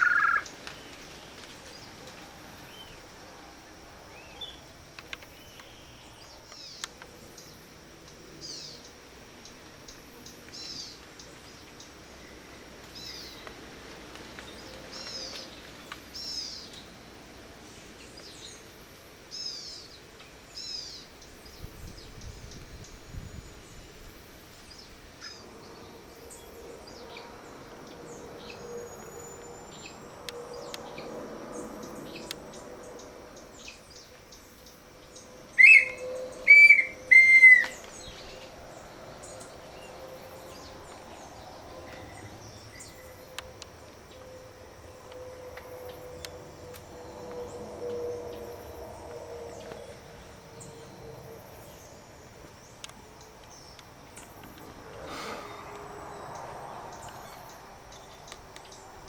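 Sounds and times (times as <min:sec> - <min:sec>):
bird chirps: 0:00.0 - 0:00.5, 0:33.6 - 0:38.5
birds calling: 0:00.0 - 0:00.5, 0:34.6 - 0:41.1
insects humming: 0:00.0 - 0:59.0
bird-call whistle: 0:35.5 - 0:38.0.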